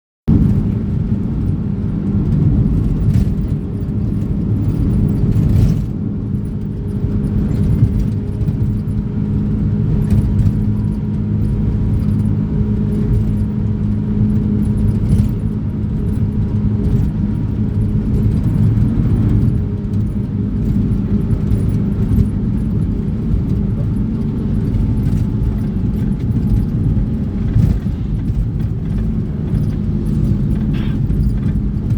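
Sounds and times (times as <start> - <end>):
vehicle engine running: 0.3 - 31.9
light clicks and rattles: 0.5 - 31.9.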